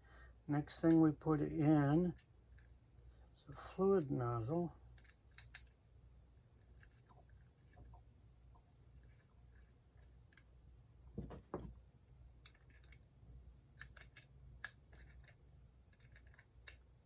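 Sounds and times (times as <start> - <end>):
low steady hum: 0.0 - 17.0
small metal parts clicking: 4.9 - 5.8, 6.6 - 7.7, 12.4 - 13.0, 13.8 - 16.8
dull knocks: 11.2 - 11.8.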